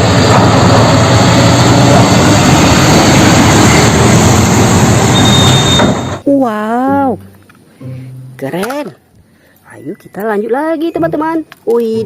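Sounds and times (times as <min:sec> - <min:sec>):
heavy truck engine: 0:00.0 - 0:06.2
brief high tone: 0:05.1 - 0:06.2.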